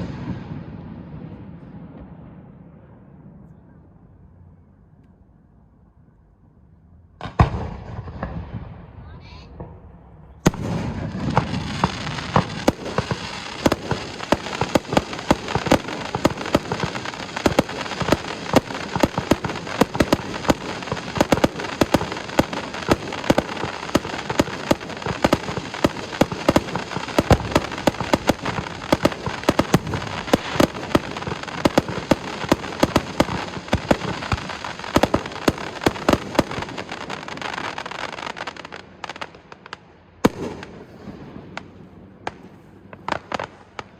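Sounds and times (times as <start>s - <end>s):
fireworks crackling: 0.0s - 2.6s, 7.2s - 43.9s.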